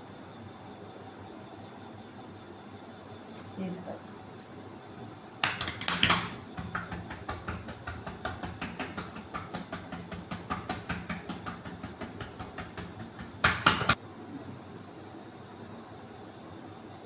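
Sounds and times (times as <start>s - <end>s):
hands tapping on body: 5.4s - 14.0s.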